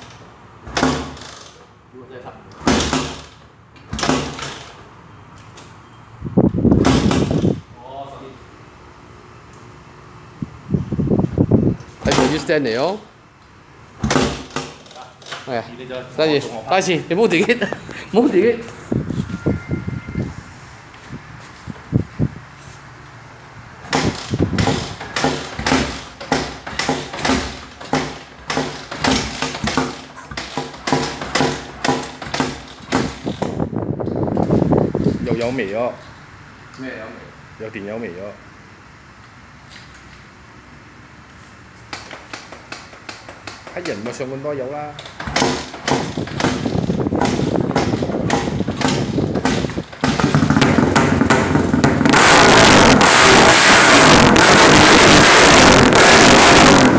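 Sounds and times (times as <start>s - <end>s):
engine cranking on starter: 23.9s - 33.6s, 45.0s - 56.9s.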